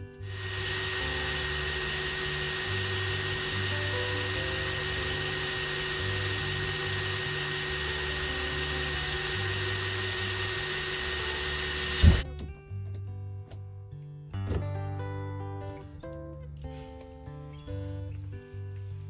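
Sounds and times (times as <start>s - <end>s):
electric drill running: 0.0s - 12.2s.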